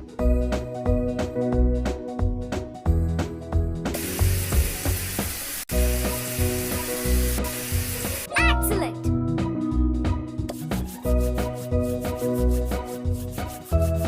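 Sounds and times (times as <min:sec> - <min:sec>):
background music: 0:00.0 - 0:14.0
loud steady hiss: 0:04.0 - 0:08.3.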